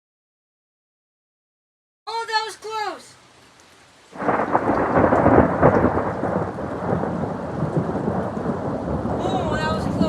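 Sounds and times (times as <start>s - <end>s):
heavy rain: 2.1s - 10.0s
wind: 2.1s - 10.0s.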